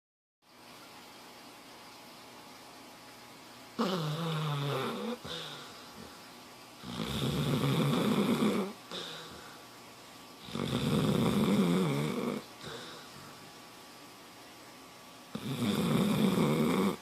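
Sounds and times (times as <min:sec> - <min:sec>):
loud snoring: 0:03.8 - 0:05.5, 0:06.8 - 0:09.1, 0:10.4 - 0:13.0, 0:15.4 - 0:17.0
quiet breathing: 0:03.8 - 0:09.9, 0:10.5 - 0:13.7.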